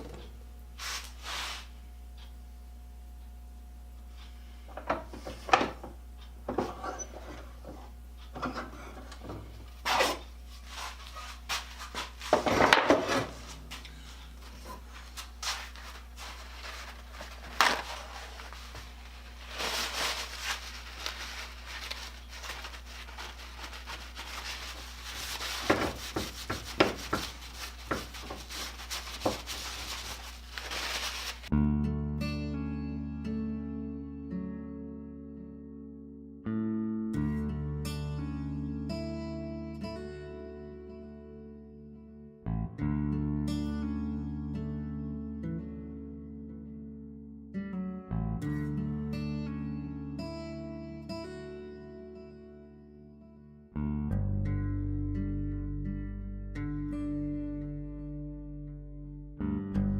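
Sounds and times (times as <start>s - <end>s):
rubbing and scraping: 14.5s - 31.5s.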